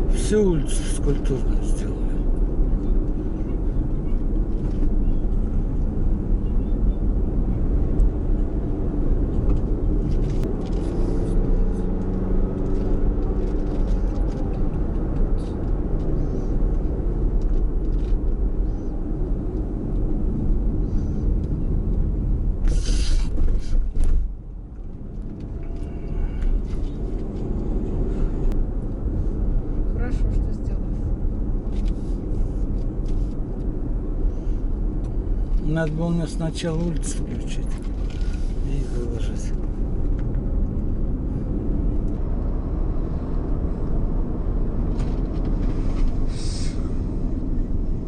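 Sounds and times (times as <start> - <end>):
car engine and tyre rumble: 0.0 - 48.0
short hiss: 22.7 - 23.8, 46.3 - 46.9.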